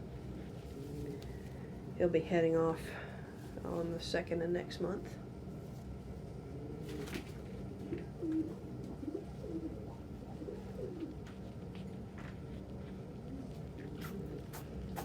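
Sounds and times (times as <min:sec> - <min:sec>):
pigeons cooing: 0:00.0 - 0:01.8, 0:06.2 - 0:11.8, 0:12.7 - 0:15.0.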